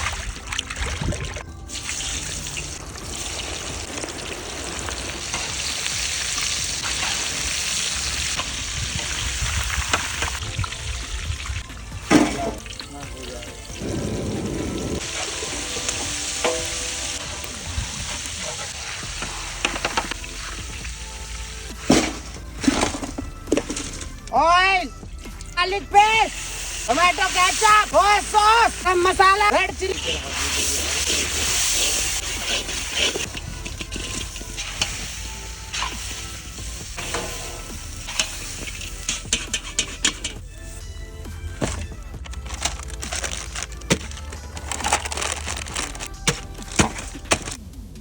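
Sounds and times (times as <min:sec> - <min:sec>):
chicken sizzling in hot oil: 0:01.6 - 0:12.1, 0:13.5 - 0:23.0, 0:26.3 - 0:28.8, 0:29.8 - 0:40.8
spatula scraping a pan: 0:30.7 - 0:36.2, 0:36.9 - 0:40.5.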